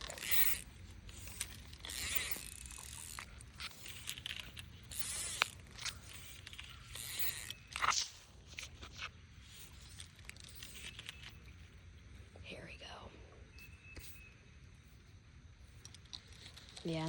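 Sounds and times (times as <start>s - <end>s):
fishing reel whirring and ratcheting: 0.0s - 11.5s
sharp reel clicks: 0.0s - 11.5s.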